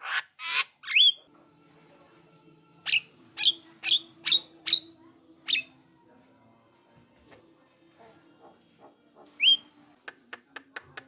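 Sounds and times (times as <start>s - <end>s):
bird harsh rasping call: 0.0s - 1.2s.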